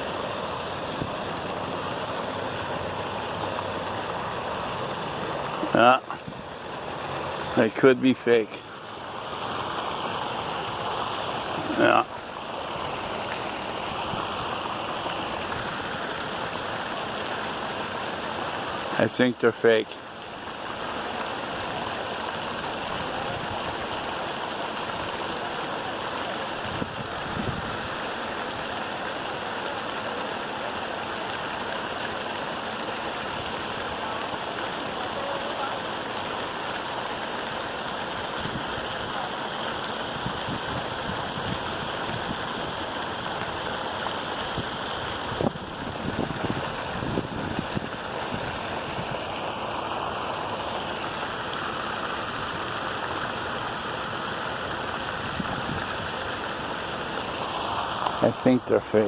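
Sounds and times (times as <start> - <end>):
running water: 0.0 - 59.0.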